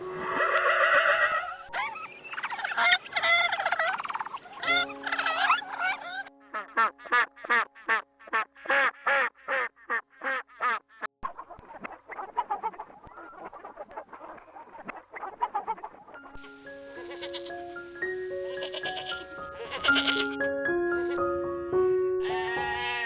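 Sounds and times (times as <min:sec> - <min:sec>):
background music with held notes: 0:00.0 - 0:01.0, 0:01.7 - 0:09.1, 0:16.1 - 0:23.0
poultry calling: 0:00.0 - 0:23.0.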